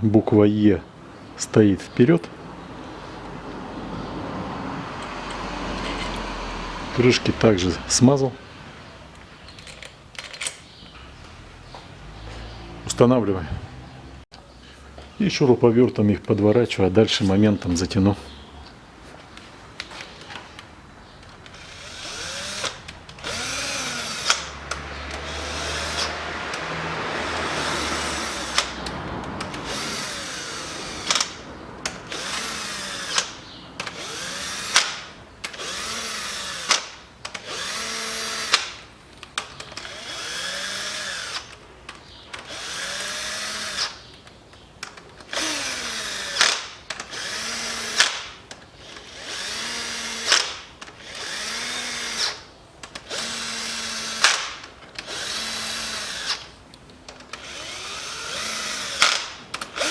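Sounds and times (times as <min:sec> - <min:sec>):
sharp clicks: 0:19.8 - 0:26.7, 0:28.4 - 0:59.9
cordless screwdriver running: 0:21.5 - 0:28.8, 0:29.4 - 0:31.4, 0:32.1 - 0:33.3, 0:33.9 - 0:38.7, 0:39.8 - 0:41.5, 0:42.5 - 0:44.0, 0:45.3 - 0:48.2, 0:48.8 - 0:56.5, 0:57.4 - 0:59.9.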